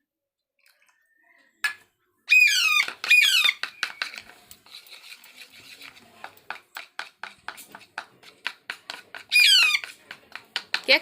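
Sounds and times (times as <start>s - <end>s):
parakeet screeching: 2.3s - 3.7s, 9.3s - 9.8s
sharp clicks and taps on a dish: 2.8s - 4.6s, 6.2s - 11.0s.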